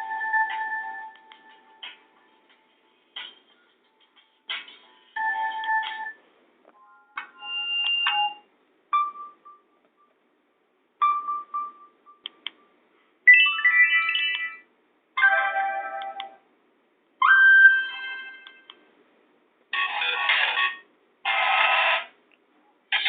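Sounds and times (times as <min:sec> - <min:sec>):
phone ringtone melodies: 0:00.0 - 0:01.9, 0:05.2 - 0:06.2, 0:11.0 - 0:14.6, 0:15.2 - 0:16.4, 0:17.2 - 0:18.7.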